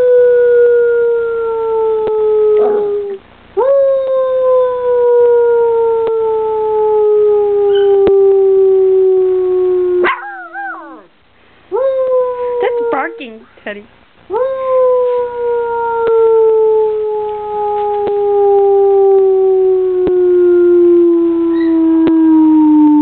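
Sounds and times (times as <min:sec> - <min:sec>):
puppy howling: 0:00.0 - 0:11.1, 0:11.7 - 0:13.4, 0:14.3 - 0:23.0
puppy yipping: 0:10.0 - 0:11.1, 0:21.5 - 0:21.8.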